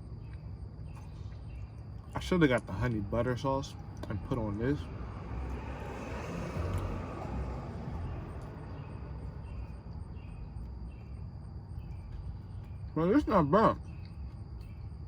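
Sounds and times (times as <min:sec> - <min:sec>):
faint insect chirps: 0:00.0 - 0:15.0
high insect tone: 0:00.0 - 0:15.0
low traffic rumble: 0:00.0 - 0:15.0
vehicle passing: 0:03.8 - 0:13.7.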